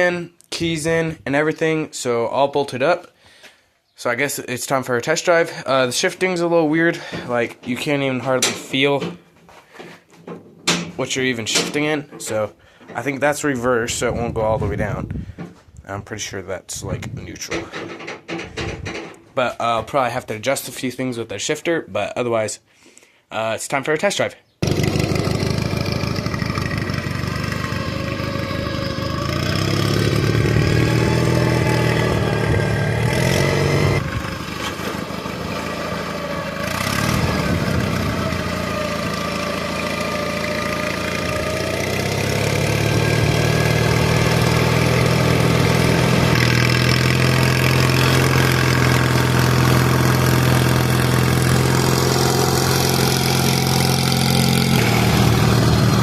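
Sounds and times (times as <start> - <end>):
lawn mower engine revving: 24.6 - 56.0.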